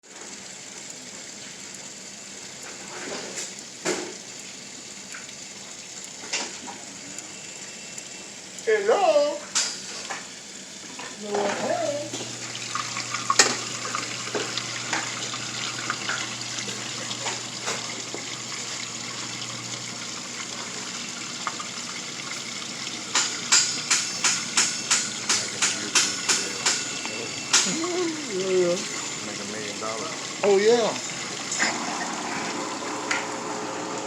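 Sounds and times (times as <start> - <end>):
washing machine motor humming: 0.0 - 34.0
rhythmic knocking: 23.1 - 31.0.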